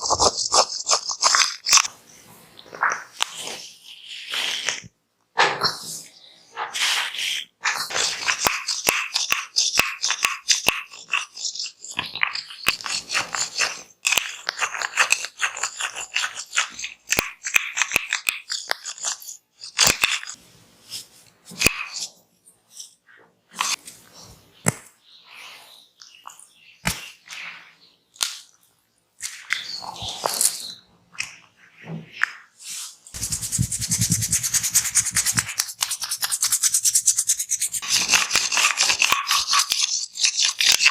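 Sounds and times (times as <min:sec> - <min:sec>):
fingers scratching through hair: 0:00.0 - 0:01.9, 0:07.9 - 0:20.4, 0:32.7 - 0:40.9
soft touches: 0:32.6 - 0:37.8
hands rubbing in massage: 0:32.6 - 0:38.1.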